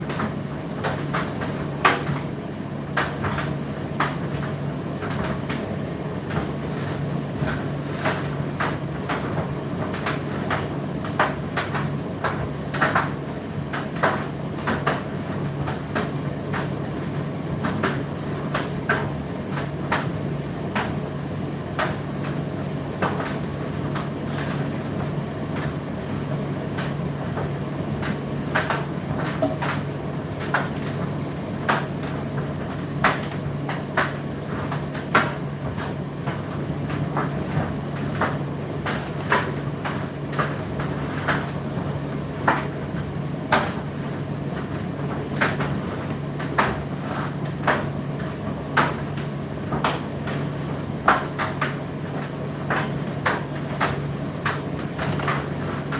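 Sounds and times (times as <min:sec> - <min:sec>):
dryer drum rushing: 0:00.0 - 0:55.9
tumble dryer motor hum: 0:00.0 - 0:55.9.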